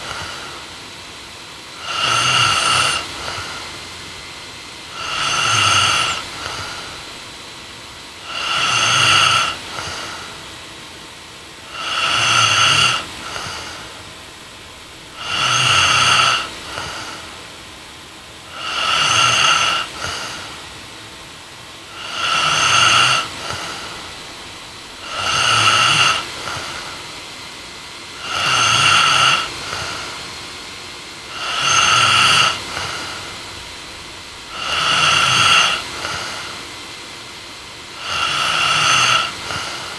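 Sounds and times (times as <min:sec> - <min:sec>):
woman snoring: 0:01.7 - 0:03.9, 0:04.9 - 0:07.4, 0:08.2 - 0:10.4, 0:11.6 - 0:17.4, 0:18.4 - 0:20.8, 0:21.8 - 0:27.1, 0:28.1 - 0:30.3, 0:31.2 - 0:36.7, 0:37.9 - 0:39.9.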